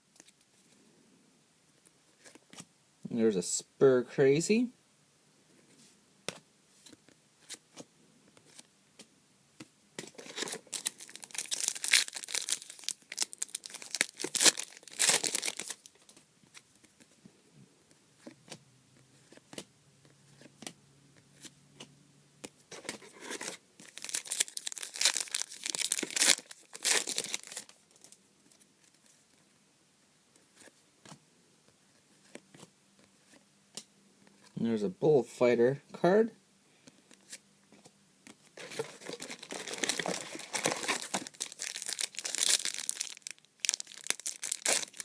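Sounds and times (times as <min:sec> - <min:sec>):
card pack wrappers tearing: 0:10.1 - 0:15.9, 0:23.3 - 0:27.8, 0:38.6 - 0:45.0
cards clicking and rustling: 0:38.6 - 0:43.2.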